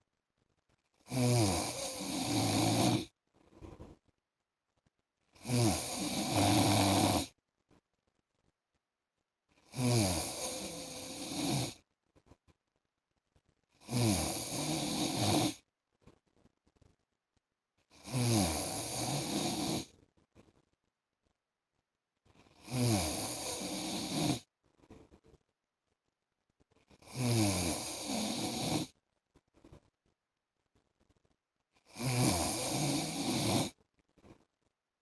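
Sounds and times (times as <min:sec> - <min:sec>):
man snoring: 0:01.1 - 0:03.1, 0:05.4 - 0:07.3, 0:09.7 - 0:11.8, 0:13.8 - 0:15.6, 0:18.0 - 0:19.9, 0:22.6 - 0:24.5, 0:27.0 - 0:28.9, 0:31.9 - 0:33.8.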